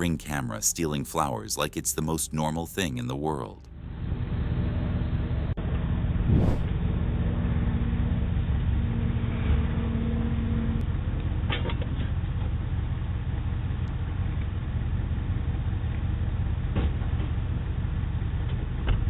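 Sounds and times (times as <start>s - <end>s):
steady outdoor rumble: 0.0s - 19.0s
low hum: 3.6s - 9.6s.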